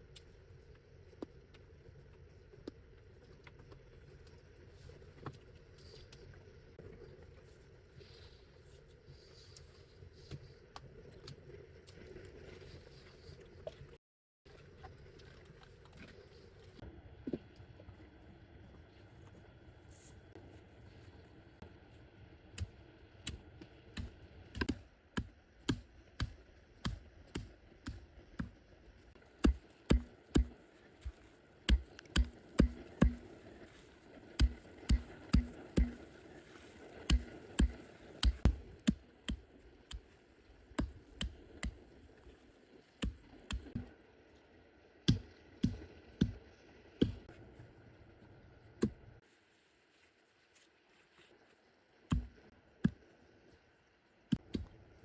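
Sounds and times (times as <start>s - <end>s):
tool knocking on wood: 34.4s - 36.0s.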